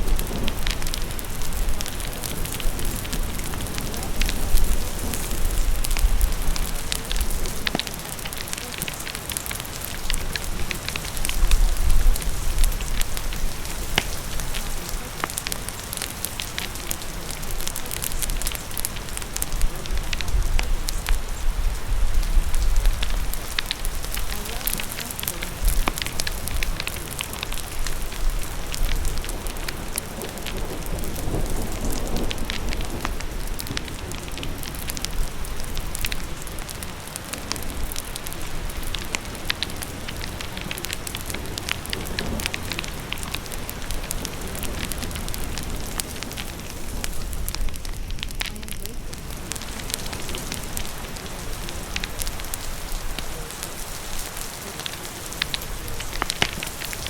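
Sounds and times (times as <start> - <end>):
crackling fire pops and snaps: 0.0 - 57.0
steady rain hissing: 0.0 - 57.0.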